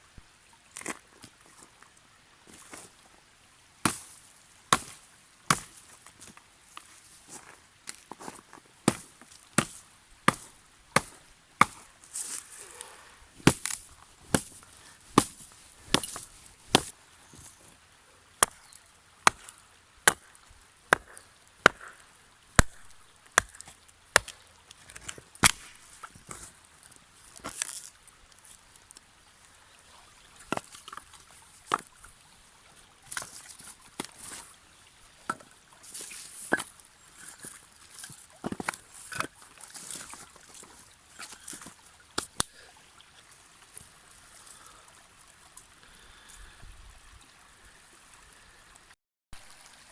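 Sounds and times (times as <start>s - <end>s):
wood being chopped: 3.8s - 4.1s, 4.7s - 5.8s, 8.8s - 11.9s, 13.4s - 17.0s, 18.4s - 18.6s, 19.2s - 20.2s, 20.9s - 22.0s, 22.6s - 25.8s.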